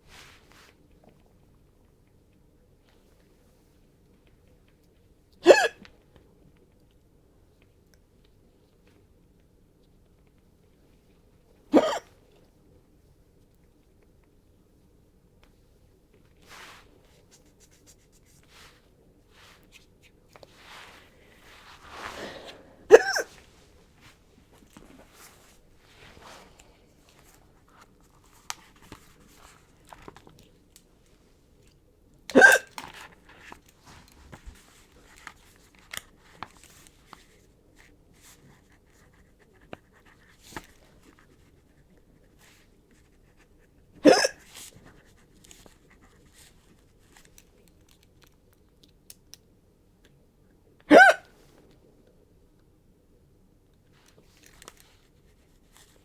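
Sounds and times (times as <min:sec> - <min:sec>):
small clicks and rustles: 0:00.1 - 0:11.6, 0:23.4 - 0:31.9, 0:32.7 - 0:43.8, 0:44.4 - 0:50.2, 0:53.6 - 0:56.0
woman hiccuping: 0:05.4 - 0:05.8, 0:11.7 - 0:12.1, 0:22.9 - 0:23.3, 0:32.3 - 0:32.7, 0:44.0 - 0:44.4, 0:50.9 - 0:51.3.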